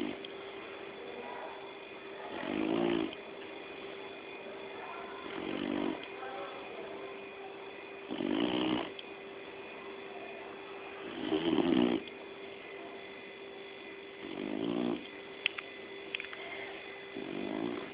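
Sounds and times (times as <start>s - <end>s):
dog snoring: 0.0s - 0.3s, 2.2s - 3.2s, 5.2s - 6.1s, 8.0s - 9.0s, 11.0s - 12.1s, 14.2s - 15.2s, 17.1s - 17.9s
faint background hum: 0.0s - 17.9s.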